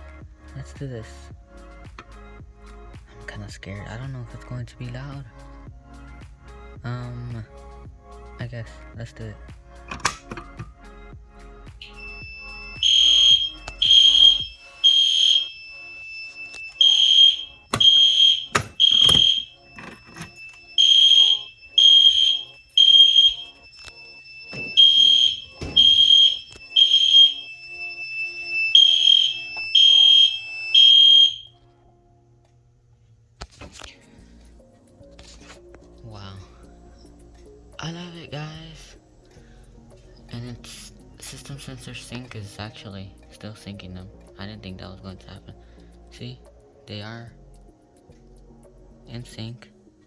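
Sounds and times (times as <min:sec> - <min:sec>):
steady high electronic tone: 0:11.8 - 0:31.5
fire alarm horn beeps: 0:11.8 - 0:31.6.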